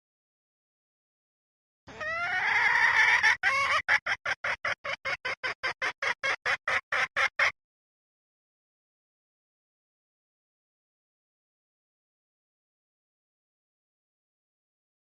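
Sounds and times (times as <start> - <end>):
hen calling: 1.9 - 7.5
hen clucking: 1.9 - 7.6.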